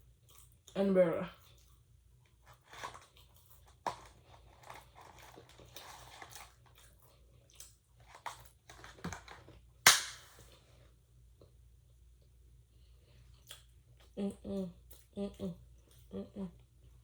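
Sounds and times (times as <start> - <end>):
person chewing and biting food: 1.5 - 8.9, 13.1 - 14.2.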